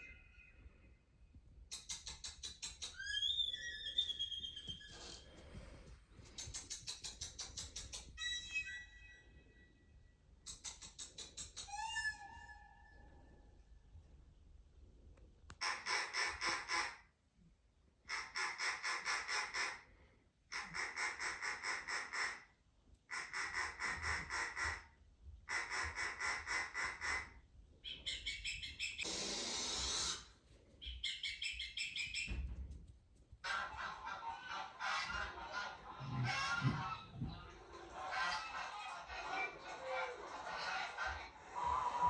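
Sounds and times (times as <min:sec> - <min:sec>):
bird-like chirping trills: 0:01.7 - 0:05.0, 0:30.8 - 0:32.3.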